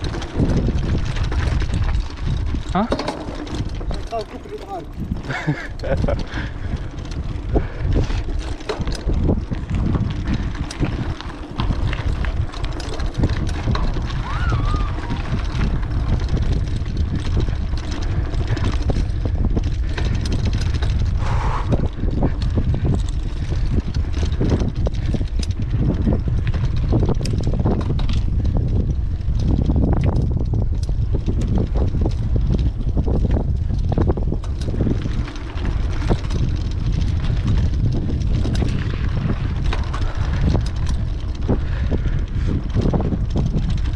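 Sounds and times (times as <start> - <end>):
bicycle clicks and rattles: 0.0 - 43.9
wind buffeting microphone: 0.0 - 43.9.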